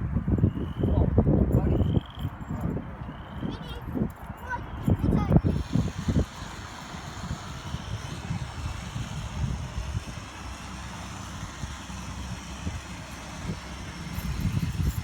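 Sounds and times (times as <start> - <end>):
wind buffeting microphone: 0.0 - 15.0
drone propellers buzzing: 4.7 - 15.0.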